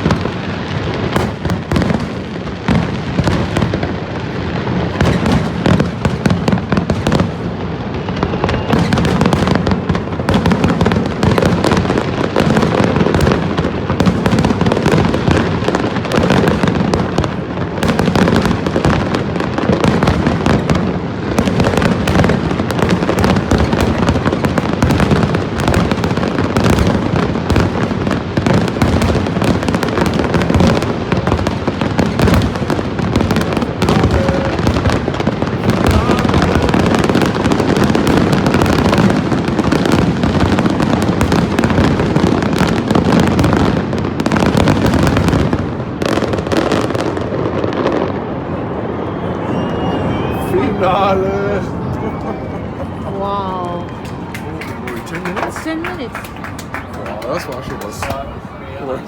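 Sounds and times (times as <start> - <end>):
fireworks bangs and crackling: 0.0 - 59.0.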